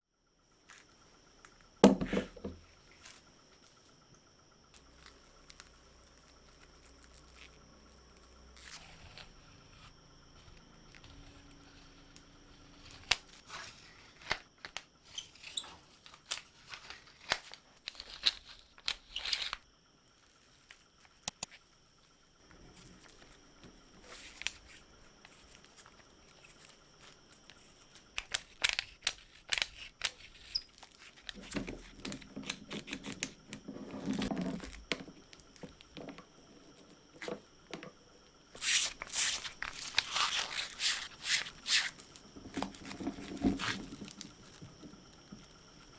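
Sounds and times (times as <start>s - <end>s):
sharp metallic clicks and taps: 21.2s - 21.5s
hand drill scraping and handling: 22.6s - 38.0s, 38.6s - 45.9s.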